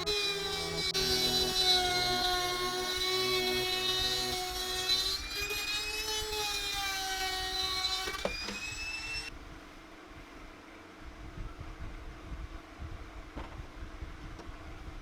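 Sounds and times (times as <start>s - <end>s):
power tool motor whining: 0.0s - 9.3s.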